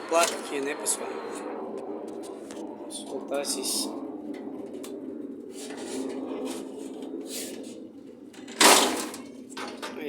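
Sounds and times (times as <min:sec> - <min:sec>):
steady low hum: 0:00.0 - 0:10.0
loud metallic clank: 0:08.5 - 0:09.2.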